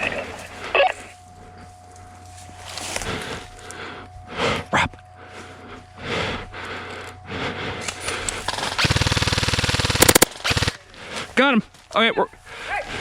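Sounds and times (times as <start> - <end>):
airsoft gun full-auto burst: 8.3 - 10.9.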